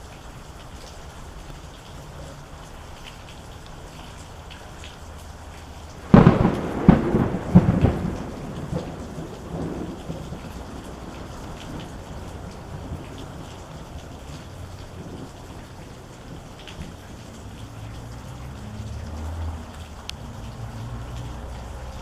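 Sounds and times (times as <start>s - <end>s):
steady rain: 0.0s - 22.0s
thunderclap and rumble: 6.0s - 22.0s.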